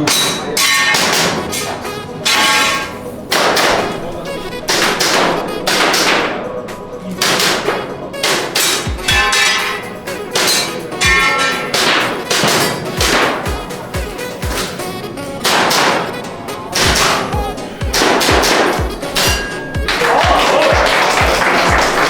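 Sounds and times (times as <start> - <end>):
metallic clang of steel targets: 0.0 - 4.1, 7.1 - 13.6, 15.4 - 19.8
background music with kick drum: 0.0 - 22.0
airsoft pistol shots: 0.2 - 1.6, 2.2 - 4.0, 4.7 - 6.4, 7.2 - 13.6, 15.4 - 16.2, 16.8 - 19.5.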